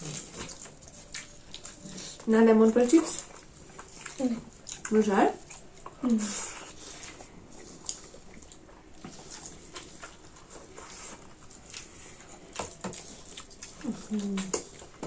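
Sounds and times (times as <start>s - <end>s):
chewing and crunching: 0.0s - 15.0s
small mouth clicks: 13.7s - 14.7s.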